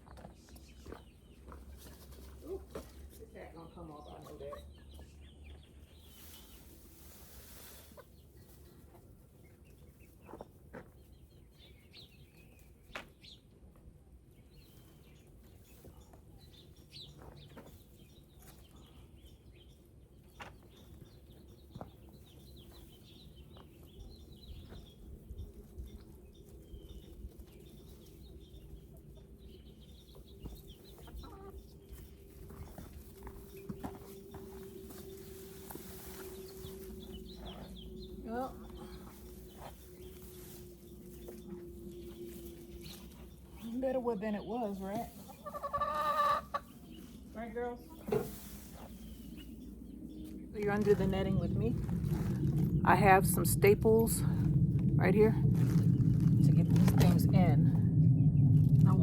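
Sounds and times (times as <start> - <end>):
hens clucking softly: 45.1 - 46.8.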